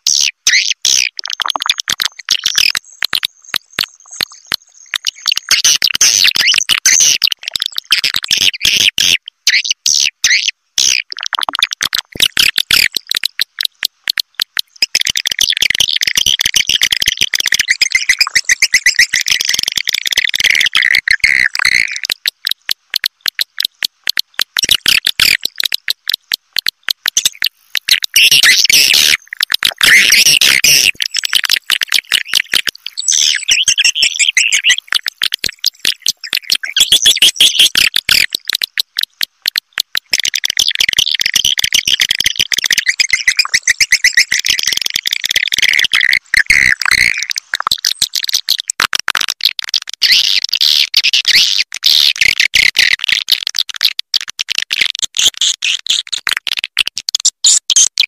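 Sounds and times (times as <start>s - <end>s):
swiftlet clicking chirps: 0.1s - 8.1s, 11.0s - 48.7s.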